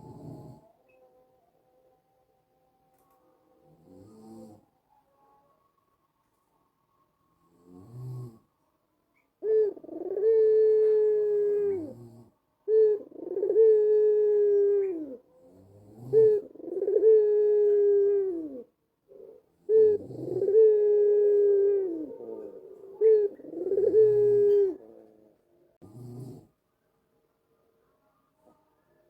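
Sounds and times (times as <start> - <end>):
dove cooing: 0.0 - 1.0, 9.4 - 26.4.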